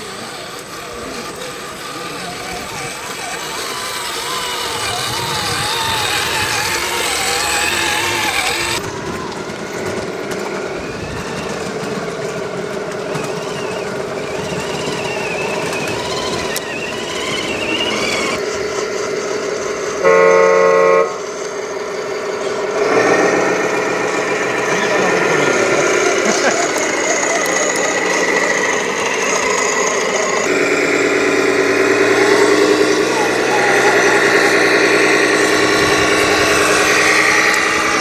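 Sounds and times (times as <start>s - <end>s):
small electric motors whining: 0.0s - 38.0s
short horn toot: 20.0s - 21.3s.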